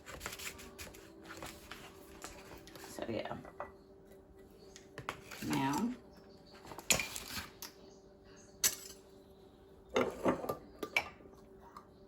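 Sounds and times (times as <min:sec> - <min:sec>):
kitchen utensils and jars clinking: 0:05.0 - 0:06.0, 0:06.6 - 0:07.8, 0:08.6 - 0:09.1, 0:09.9 - 0:11.4.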